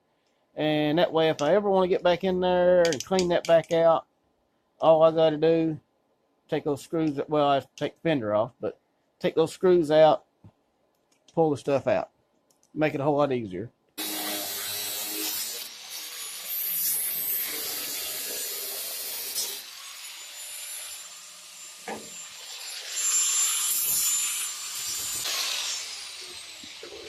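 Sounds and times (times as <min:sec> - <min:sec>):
power tool cutting sheet metal: 0:14.0 - 0:27.0.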